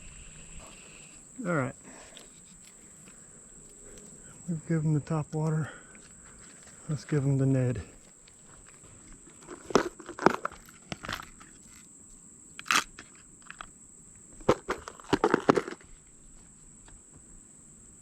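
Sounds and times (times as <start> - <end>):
high-pitched insect drone: 0.0 - 9.5
crunches and knocks of handled gear: 7.9 - 11.9, 14.3 - 16.0.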